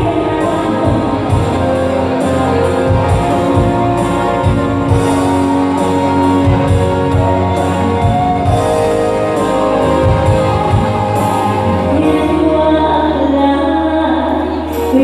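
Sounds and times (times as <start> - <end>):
steady drum beat: 0.0 - 12.0
live band playing instrumental: 0.0 - 15.0.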